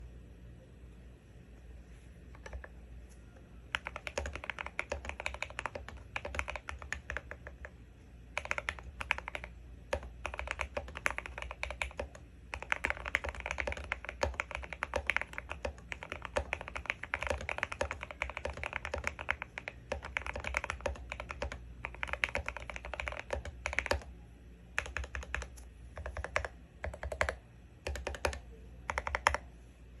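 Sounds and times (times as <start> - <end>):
typing on mechanical keyboard: 2.4 - 2.7, 3.7 - 24.1, 24.8 - 29.4.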